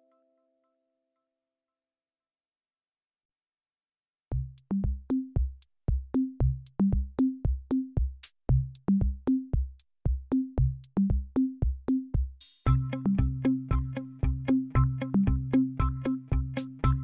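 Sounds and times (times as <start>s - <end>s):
electronic drum-machine beat: 4.3s - 17.0s.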